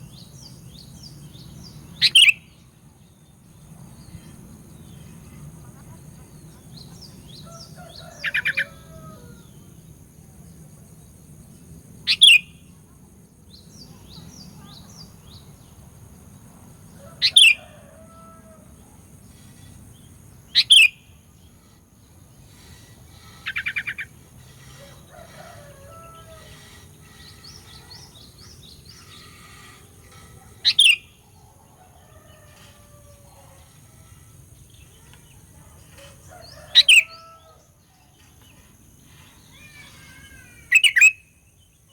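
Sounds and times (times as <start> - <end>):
buzzy bird trills: 17.1 - 41.2
steady low hum: 18.3 - 36.6
soft bird chirps: 19.3 - 41.9.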